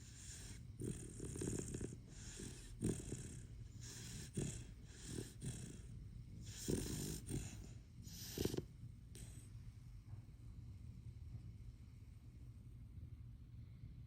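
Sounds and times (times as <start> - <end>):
dog snoring: 0.0 - 9.5.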